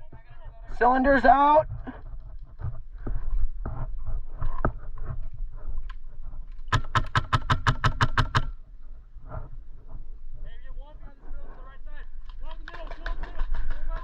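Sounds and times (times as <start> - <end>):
knocks and thumps of movement: 1.6 - 8.6
airsoft gun firing: 6.7 - 8.6.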